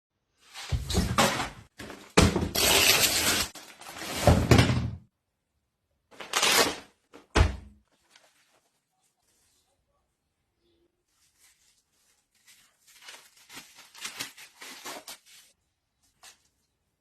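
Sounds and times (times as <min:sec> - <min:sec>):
packaging rustling: 0:11.3 - 0:15.6.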